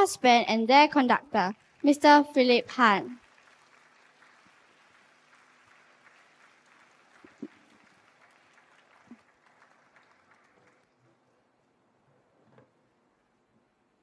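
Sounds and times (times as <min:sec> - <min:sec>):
faint audience applause: 0:01.4 - 0:11.6.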